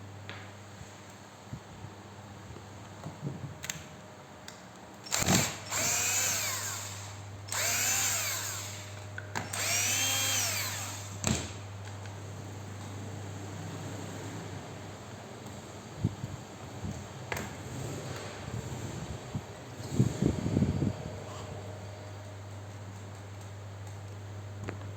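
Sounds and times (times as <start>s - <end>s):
rotary hammer motor spinning: 5.0s - 11.2s.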